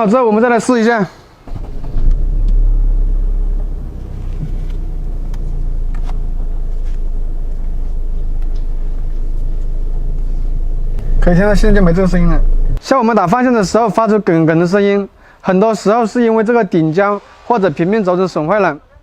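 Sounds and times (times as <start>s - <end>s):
car engine idling: 1.5s - 12.8s.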